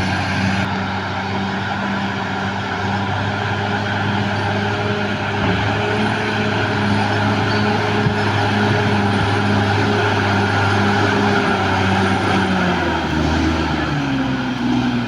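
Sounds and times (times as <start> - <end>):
bulldozer diesel engine running: 0.0 - 15.0.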